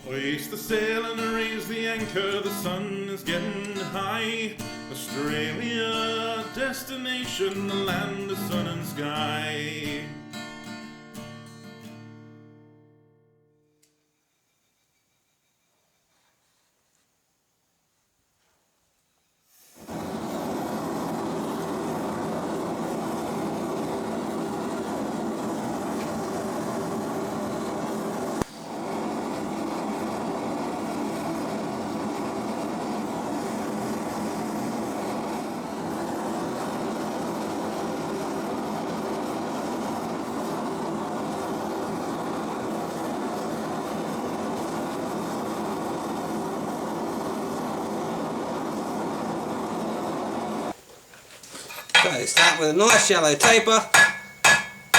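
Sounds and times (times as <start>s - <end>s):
forge roaring: 19.8s - 50.7s.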